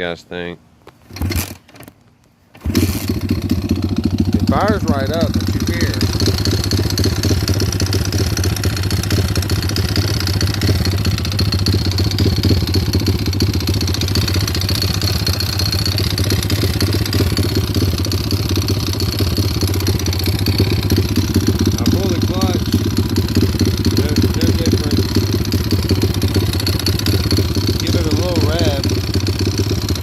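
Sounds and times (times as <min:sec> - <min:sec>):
fast even engine rattle: 0:02.6 - 0:30.0
small motorbike engine idling: 0:02.6 - 0:30.0.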